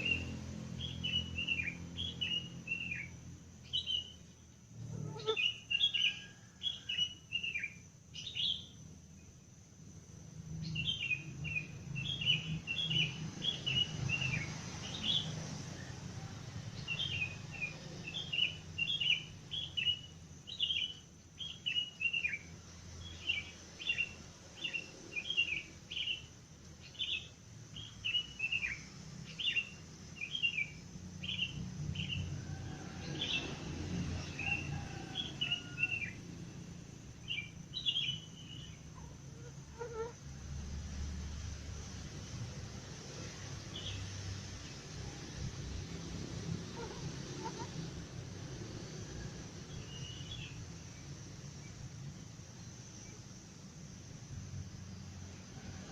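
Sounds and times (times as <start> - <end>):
birds chirping: 0.0 - 8.8, 37.3 - 40.2, 46.7 - 47.8.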